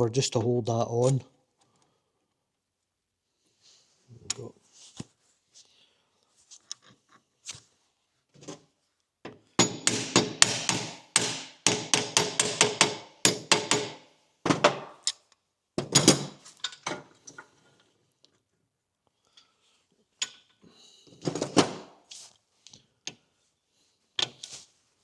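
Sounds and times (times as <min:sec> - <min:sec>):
hammer striking metal: 0:09.6 - 0:14.0.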